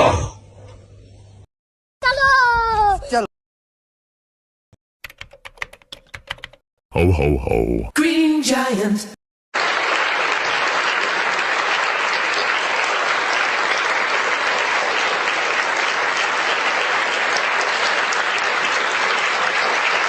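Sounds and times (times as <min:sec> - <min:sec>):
large crowd applauding: 0:09.6 - 0:20.0.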